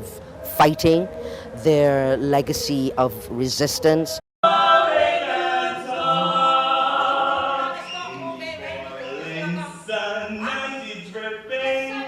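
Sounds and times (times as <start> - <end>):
choir singing: 4.4 - 12.0.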